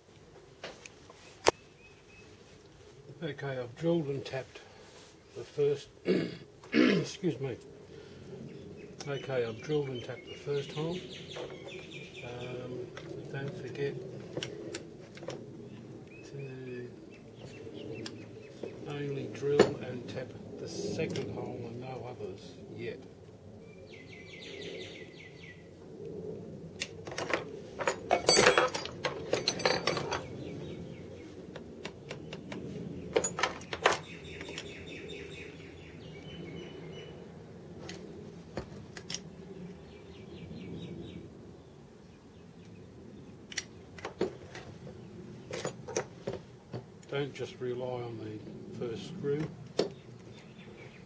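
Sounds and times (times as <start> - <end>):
birds chirping: 1.1 - 4.0, 4.6 - 26.4, 27.3 - 51.0
metal tools clattering: 27.2 - 30.4, 45.5 - 46.1.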